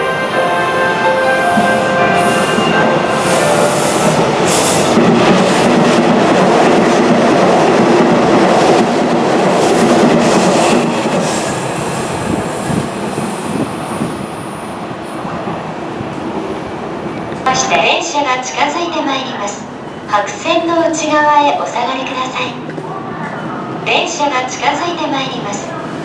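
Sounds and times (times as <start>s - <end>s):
train wheels rushing on rails: 0.0s - 17.8s.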